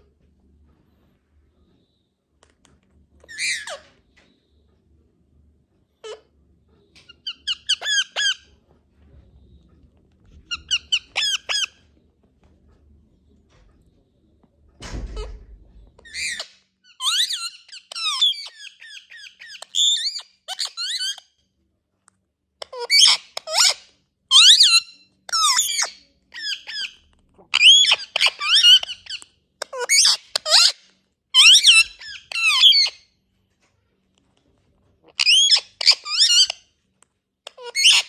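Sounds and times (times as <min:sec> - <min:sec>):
parrot chirps and squeaks: 0:03.2 - 0:03.9, 0:06.0 - 0:06.3, 0:07.0 - 0:08.6, 0:10.3 - 0:11.8, 0:16.0 - 0:21.4, 0:22.6 - 0:33.1, 0:35.0 - 0:36.7, 0:37.4 - 0:38.0.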